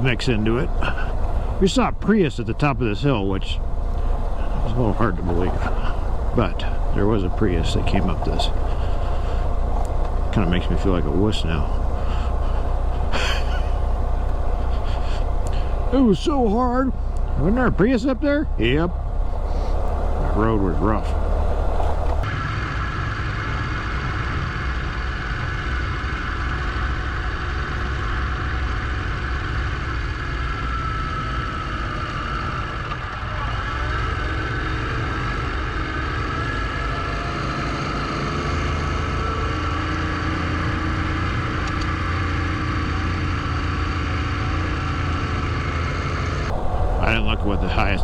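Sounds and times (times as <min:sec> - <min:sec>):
motorcycle engine running: 0:00.0 - 0:48.0
road noise: 0:00.0 - 0:48.0
wind noise: 0:46.5 - 0:48.0.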